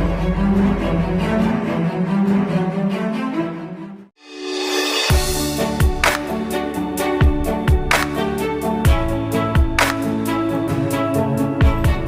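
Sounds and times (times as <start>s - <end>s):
electronic beat with deep kick drum: 5.1s - 12.0s.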